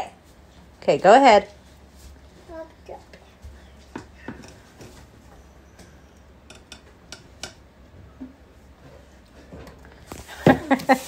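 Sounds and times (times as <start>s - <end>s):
utensils clicking against dishes: 6.5s - 7.6s.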